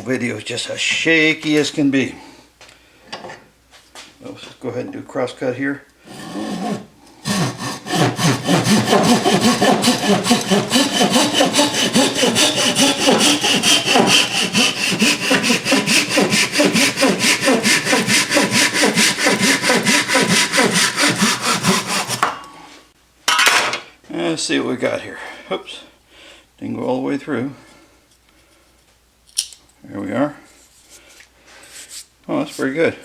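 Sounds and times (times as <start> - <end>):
hand saw cutting wood: 6.0 - 22.4.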